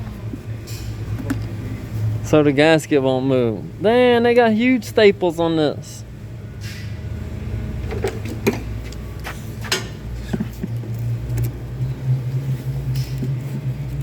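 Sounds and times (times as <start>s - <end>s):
low motor hum: 6.0s - 14.0s.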